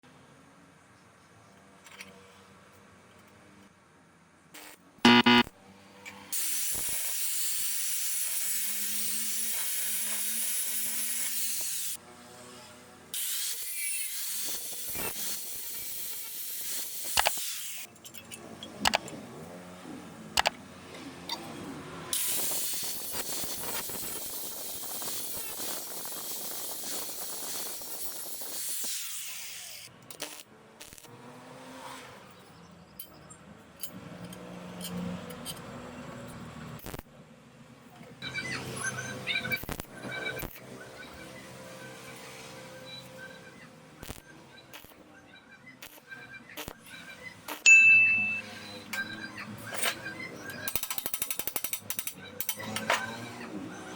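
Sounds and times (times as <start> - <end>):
welding arc hissing and crackling: 6.4 - 12.0, 13.2 - 17.9, 22.2 - 31.1, 36.8 - 37.0, 39.6 - 40.6, 44.0 - 45.0, 45.8 - 46.8.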